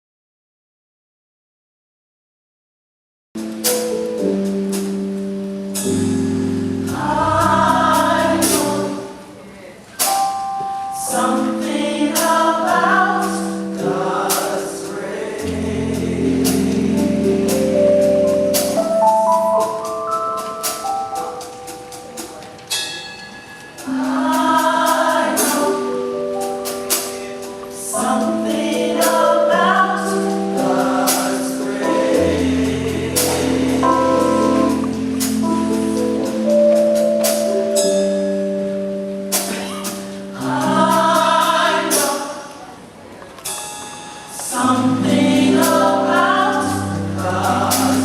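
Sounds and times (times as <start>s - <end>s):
drum and cymbal hits: 3.4s - 9.1s, 10.0s - 38.6s, 39.2s - 42.4s, 43.5s - 48.0s
bass line: 5.8s - 9.0s
gospel choir singing: 6.6s - 9.5s, 11.0s - 19.9s, 23.8s - 37.4s, 39.4s - 42.9s, 44.3s - 48.0s.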